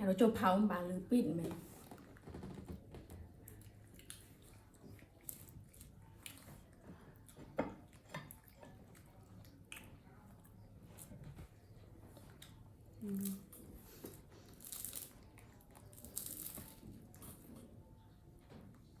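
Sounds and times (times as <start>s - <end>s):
monkeys eating with wet smacks: 1.8s - 11.5s.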